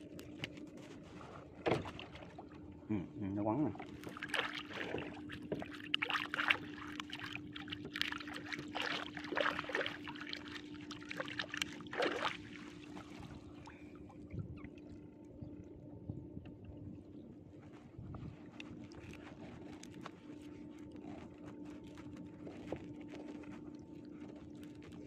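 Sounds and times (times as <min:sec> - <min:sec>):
steady hum: 0:00.0 - 0:25.0
water splashing and dripping: 0:04.0 - 0:14.7.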